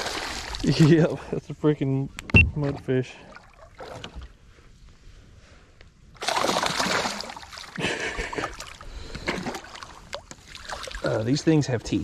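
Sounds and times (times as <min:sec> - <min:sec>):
fish thrashing water splashing: 0:06.2 - 0:07.8, 0:08.4 - 0:11.2.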